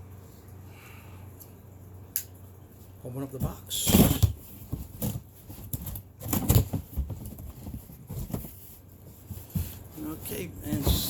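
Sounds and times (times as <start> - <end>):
cardboard rustling and knocking: 3.4 - 11.0.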